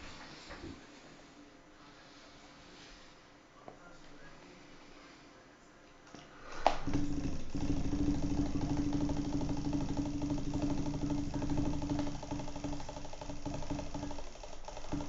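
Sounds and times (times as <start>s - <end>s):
small motor rattling and humming: 6.8s - 15.0s.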